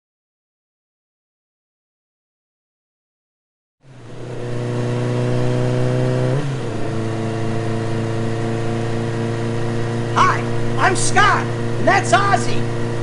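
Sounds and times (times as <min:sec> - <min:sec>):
motorcycle engine running: 0:03.8 - 0:13.0.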